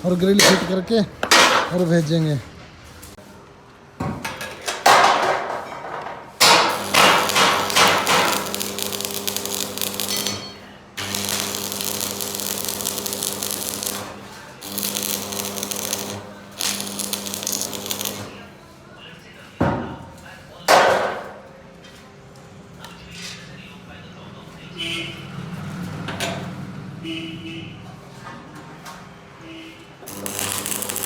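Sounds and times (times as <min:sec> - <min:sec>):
arc welding crackling hiss: 0:06.4 - 0:18.5, 0:30.0 - 0:31.0
welding machine hum: 0:06.4 - 0:18.5, 0:30.0 - 0:31.0.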